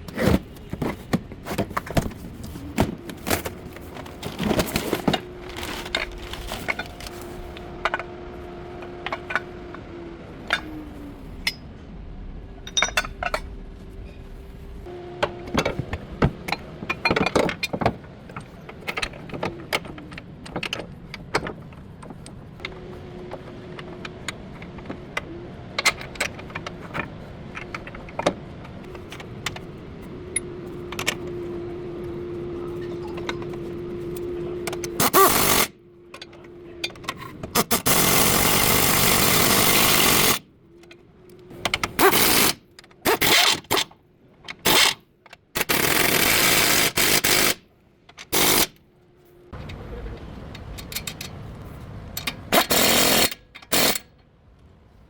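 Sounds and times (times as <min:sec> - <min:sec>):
faint steady hum: 0:00.0 - 0:55.0
power tool bursts: 0:35.0 - 0:35.7, 0:37.6 - 0:40.4, 0:45.6 - 0:47.6, 0:48.3 - 0:48.7, 0:52.5 - 0:54.0.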